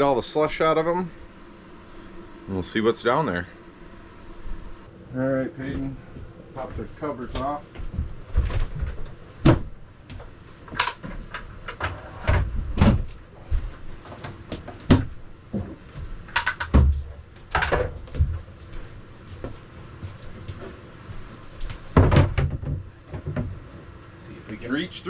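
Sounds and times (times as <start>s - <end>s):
hole covers knocking and clattering: 21.9s - 23.6s.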